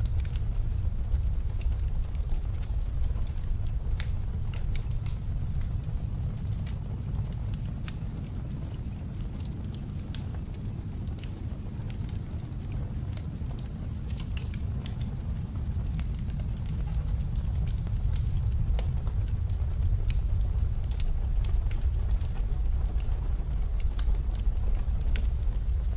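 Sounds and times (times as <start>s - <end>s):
blizzard wind: 0.0s - 25.9s
wood fire crackling: 0.0s - 25.9s.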